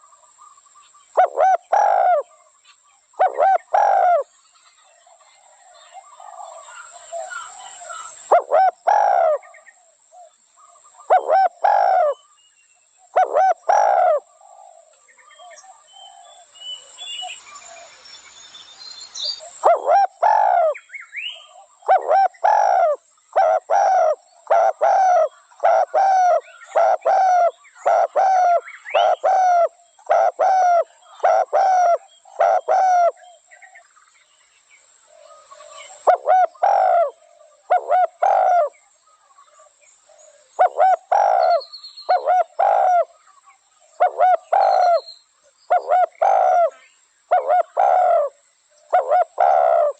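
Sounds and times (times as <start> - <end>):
dove cooing: 1.1 - 2.5, 3.2 - 4.4, 5.1 - 9.6, 11.0 - 12.2, 13.1 - 16.4, 19.4 - 20.8, 21.4 - 33.4, 35.2 - 38.8, 40.1 - 43.2, 43.9 - 45.1, 45.7 - 49.9.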